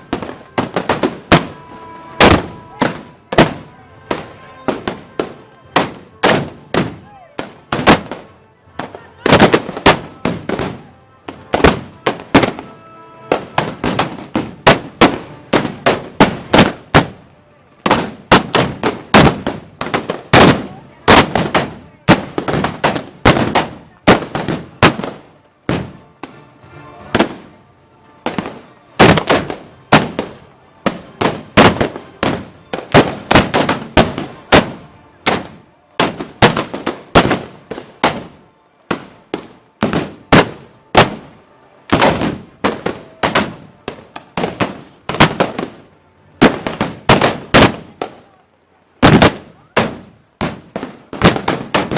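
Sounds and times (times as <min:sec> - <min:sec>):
guns firing in volleys: 0:49.0 - 0:51.9.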